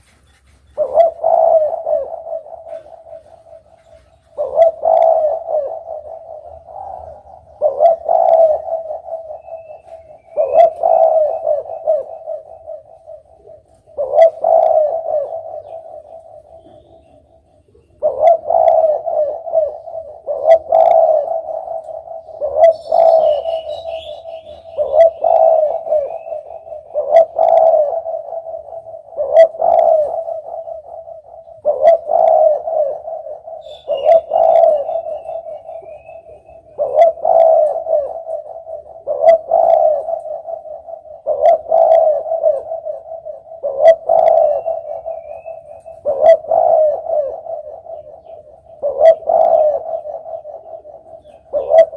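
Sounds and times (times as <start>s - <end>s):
dove cooing: 0.0s - 51.9s
small bird chirps: 21.7s - 27.6s, 29.7s - 42.8s, 43.4s - 51.9s.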